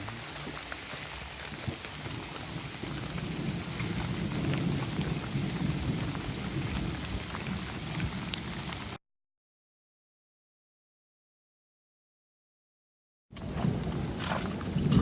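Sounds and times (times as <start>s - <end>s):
low rumble: 0.0s - 9.0s
steady rain: 0.0s - 9.0s, 13.4s - 15.0s.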